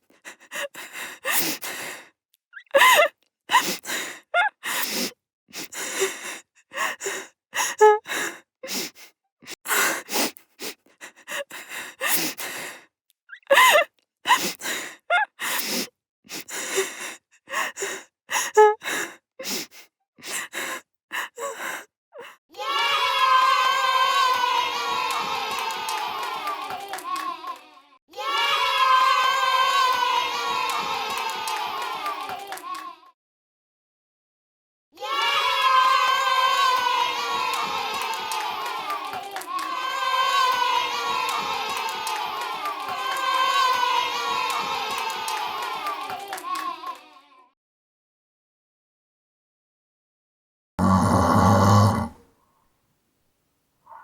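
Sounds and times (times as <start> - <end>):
person gasping: 0.0 - 2.2, 2.8 - 12.9, 13.5 - 22.4, 50.8 - 52.2
many voices falling sound: 22.6 - 33.0, 35.0 - 47.4.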